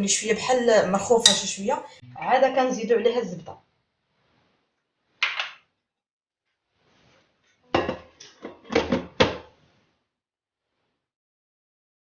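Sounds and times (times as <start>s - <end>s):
kitchen items knocking and clattering: 7.7s - 9.6s.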